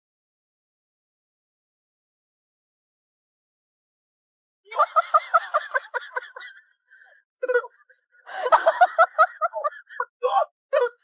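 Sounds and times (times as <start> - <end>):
person laughing: 4.7 - 6.6, 8.3 - 10.4.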